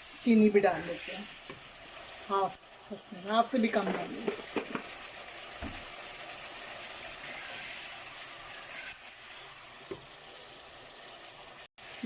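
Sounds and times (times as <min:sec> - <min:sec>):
sauce sizzling in a pan: 0:00.0 - 0:12.0.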